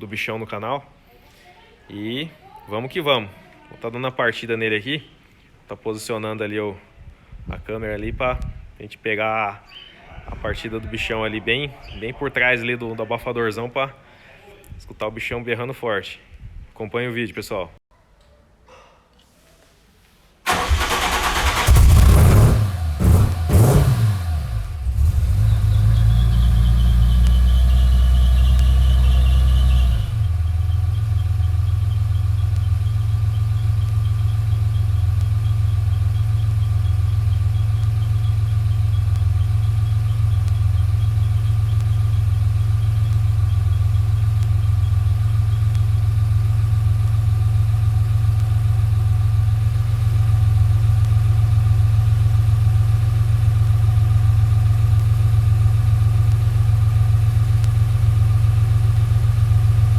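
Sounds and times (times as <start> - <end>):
car engine idling: 20.5 - 59.9.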